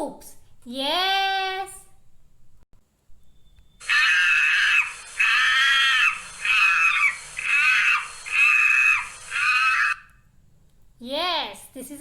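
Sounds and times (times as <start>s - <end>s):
monkey whooping calls: 3.8s - 10.1s.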